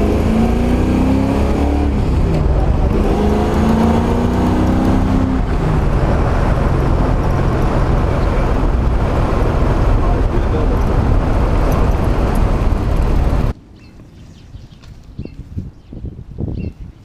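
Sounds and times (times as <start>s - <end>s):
car engine accelerating through gears: 0.0s - 13.5s.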